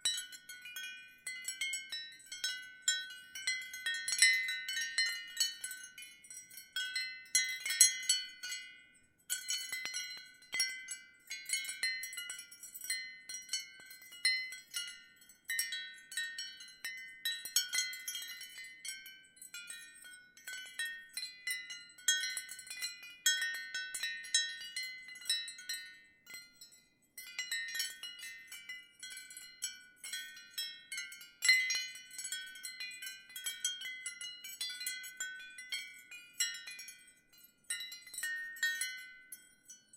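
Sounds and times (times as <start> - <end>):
ceramic wind chimes tinkling: 0.0 - 39.9.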